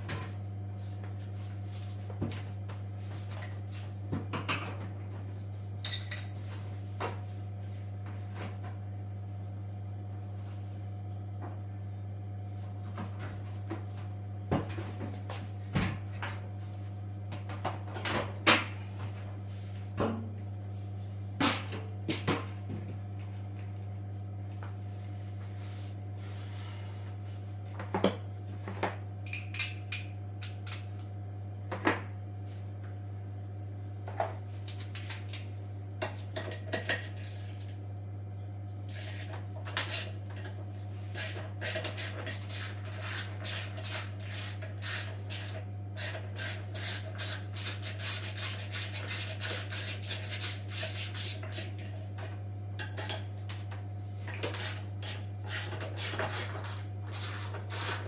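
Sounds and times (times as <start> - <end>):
metal tools clinking and scraping: 52.9 - 53.9.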